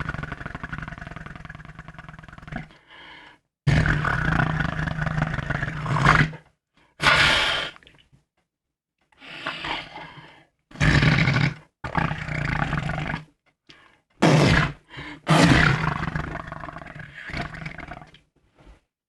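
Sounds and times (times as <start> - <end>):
imitation fart sounds: 0.0 - 2.7, 3.7 - 6.4, 10.7 - 13.3, 14.2 - 18.2.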